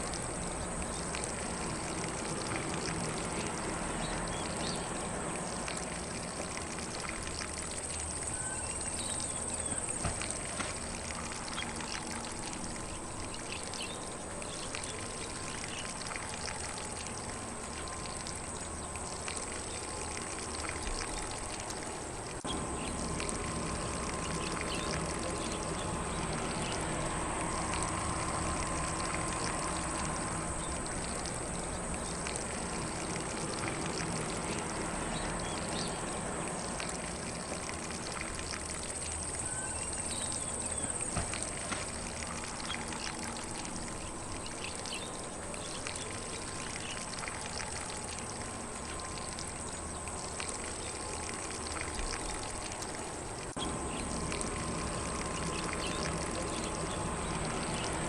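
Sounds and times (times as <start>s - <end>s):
lawn sprinkler spraying water: 0.0s - 58.0s
faint bird chirps: 8.2s - 10.0s, 39.4s - 41.1s.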